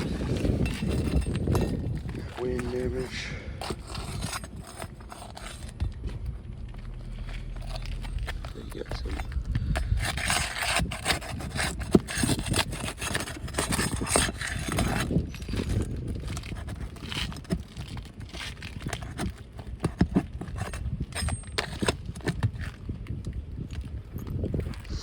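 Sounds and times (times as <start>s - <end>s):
pry bar scraping shingles: 0.0s - 22.9s.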